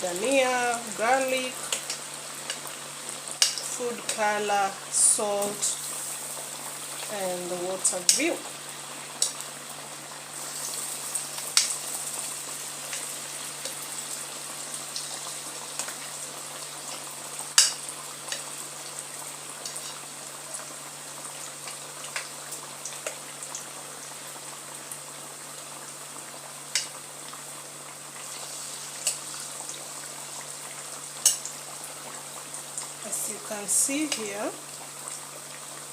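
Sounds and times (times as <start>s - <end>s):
potatoes deep-frying in oil: 0.0s - 35.9s.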